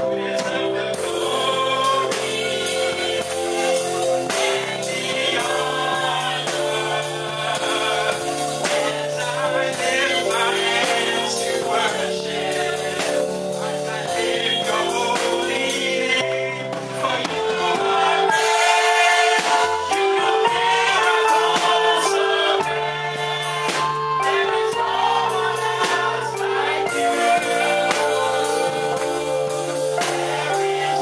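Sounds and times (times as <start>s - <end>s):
gospel singing: 0.0s - 31.0s
sustained keyboard chords: 0.0s - 31.0s
steady beat: 1.0s - 31.0s.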